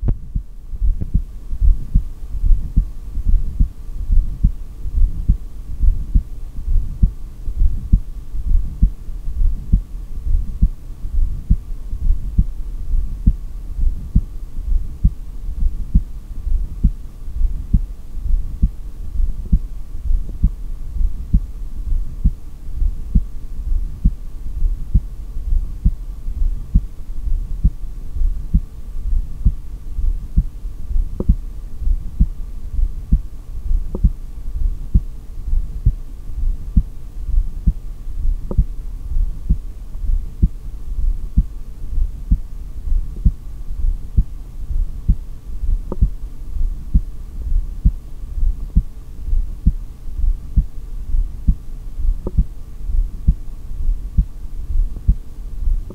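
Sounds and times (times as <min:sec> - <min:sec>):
faint steady hum: 0:00.0 - 0:55.9
heartbeat thumps: 0:00.0 - 0:55.9.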